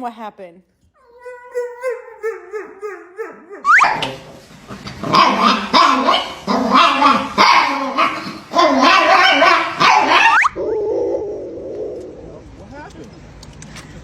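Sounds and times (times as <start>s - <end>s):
dog barking and yowling: 1.0s - 4.4s, 5.0s - 10.6s.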